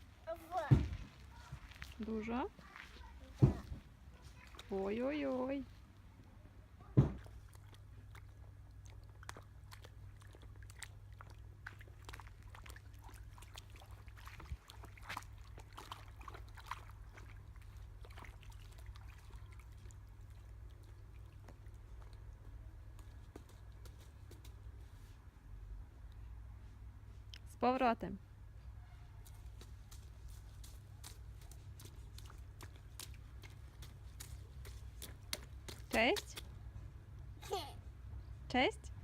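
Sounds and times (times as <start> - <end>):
boots splashing in puddles: 0.4 - 5.5, 7.0 - 24.9, 29.2 - 36.6.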